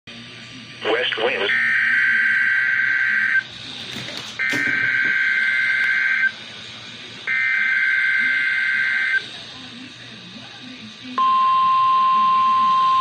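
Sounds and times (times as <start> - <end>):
screechy digital data bursts: 7.3 - 9.2.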